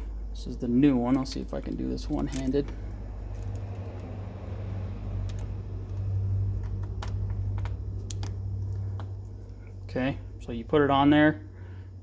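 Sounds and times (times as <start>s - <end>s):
steady low hum: 0.0s - 12.0s
key and lock clicking: 5.2s - 9.1s.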